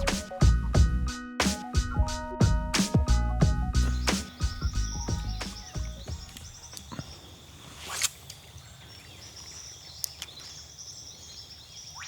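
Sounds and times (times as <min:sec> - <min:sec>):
birds chirping: 0:03.7 - 0:12.0
insects chirring: 0:03.8 - 0:12.0.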